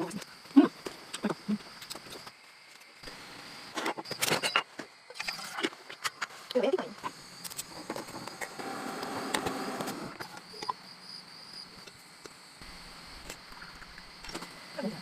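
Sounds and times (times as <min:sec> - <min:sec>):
high insect chirp: 0:00.0 - 0:15.0.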